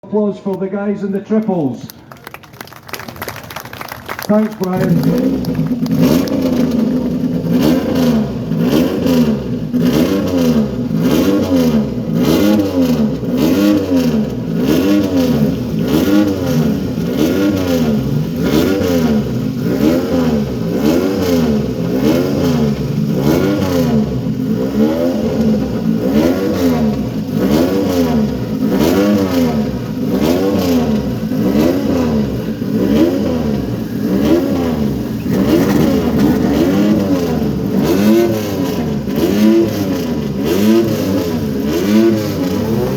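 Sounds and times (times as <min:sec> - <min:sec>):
motorcycle engines revving: 0:04.3 - 0:42.9.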